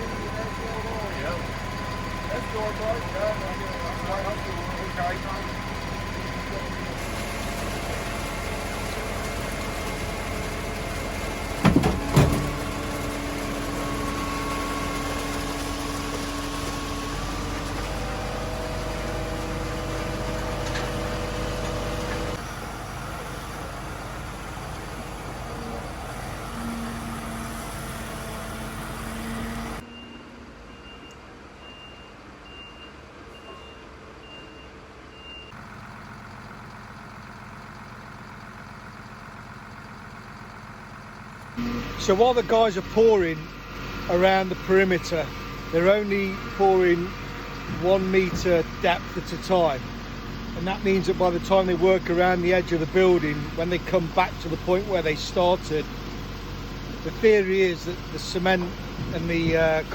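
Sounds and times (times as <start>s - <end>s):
truck reversing alarm beeps: 0.0s - 22.4s, 29.1s - 49.8s
heavy truck engine running: 0.0s - 30.6s, 33.0s - 59.9s
loud metal clanks: 11.5s - 13.2s.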